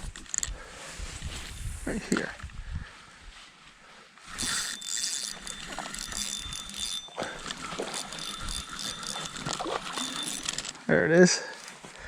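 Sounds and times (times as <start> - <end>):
fishing reel clicking and whirring: 4.3 - 10.8.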